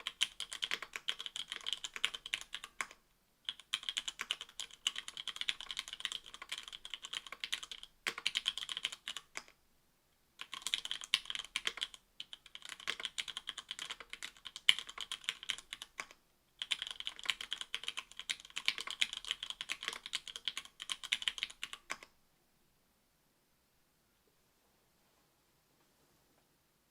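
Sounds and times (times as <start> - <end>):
mechanical keyboard typing: 0.0 - 9.6, 10.4 - 22.1.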